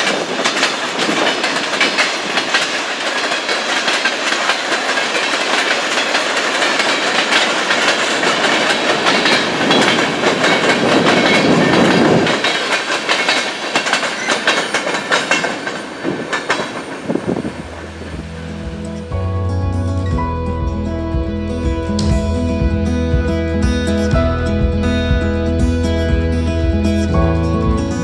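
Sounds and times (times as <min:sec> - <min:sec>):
train wheels clickety-clack: 0:00.0 - 0:19.1.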